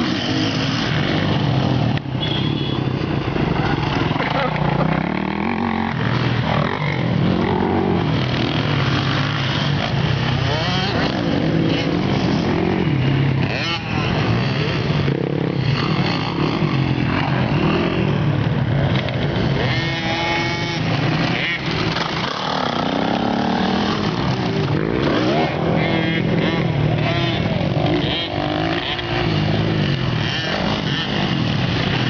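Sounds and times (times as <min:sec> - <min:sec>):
horn honking: 0:02.2 - 0:03.0.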